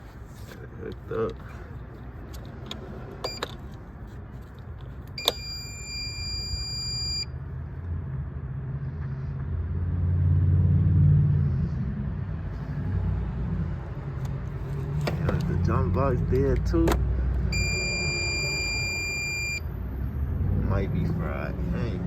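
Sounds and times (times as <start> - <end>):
jump starter electronic beep: 5.2 - 7.3, 17.5 - 19.6.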